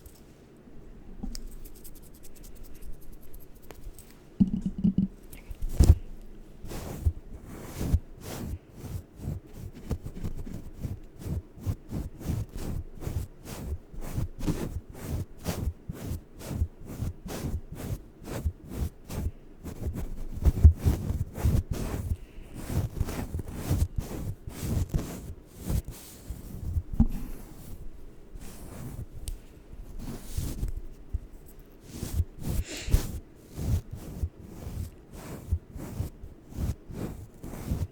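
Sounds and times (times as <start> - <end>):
rapid tapping on microphone: 4.4 - 5.2.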